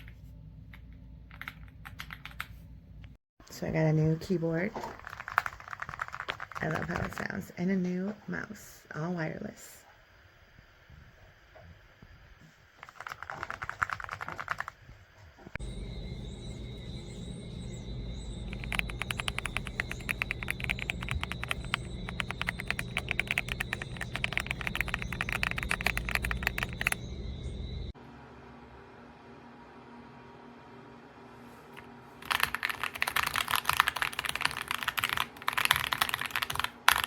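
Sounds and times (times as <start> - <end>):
typing on mechanical keyboard: 1.3 - 2.5, 5.0 - 7.3, 12.8 - 14.8, 18.5 - 27.0, 32.2 - 37.0
steady low hum: 14.5 - 37.0
faint high whine: 14.9 - 31.1.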